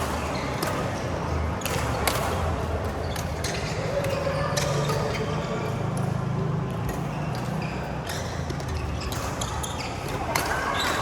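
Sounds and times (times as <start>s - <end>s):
low hum of hall: 0.0s - 11.0s
racket hitting shuttlecock: 0.0s - 11.0s.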